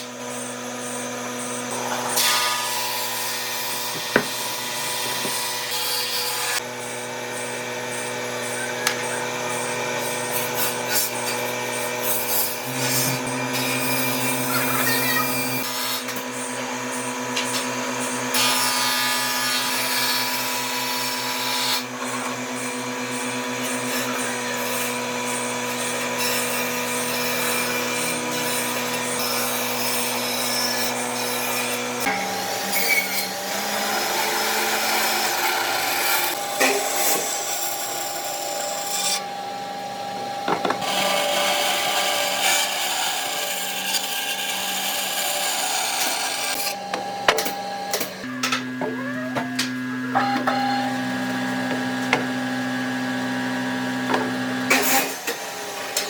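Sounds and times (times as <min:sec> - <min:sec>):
rasping wood-cutting noise: 0:00.0 - 0:39.3, 0:40.0 - 0:56.0
power tool motor hum: 0:00.1 - 0:18.4.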